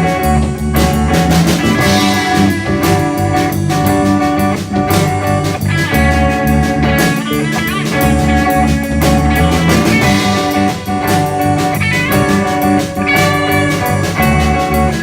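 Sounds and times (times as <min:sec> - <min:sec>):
rock band playing instrumental: 0:00.0 - 0:15.0.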